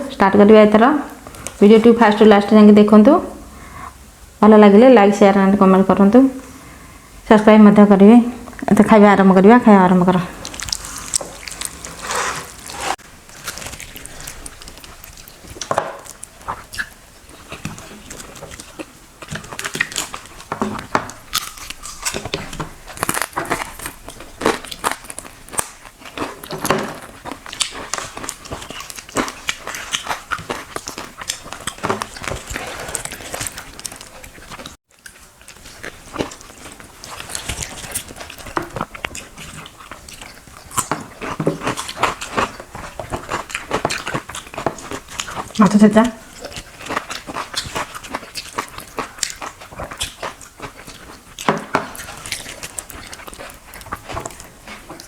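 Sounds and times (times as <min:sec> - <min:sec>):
person chewing food: 0:01.1 - 0:01.6, 0:10.0 - 0:55.0.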